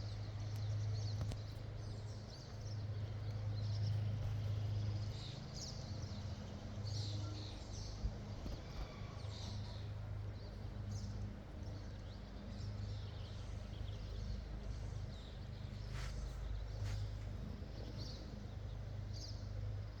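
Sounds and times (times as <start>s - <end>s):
small birds chirping: 2.0s - 20.0s
steady low hum: 7.6s - 20.0s.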